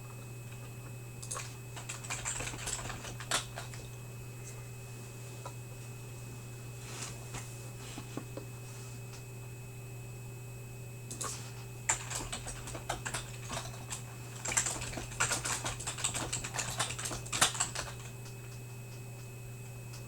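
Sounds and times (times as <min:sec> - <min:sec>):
steady electrical hum: 0:00.0 - 0:20.0
computer keyboard typing: 0:00.5 - 0:03.9, 0:11.1 - 0:19.3.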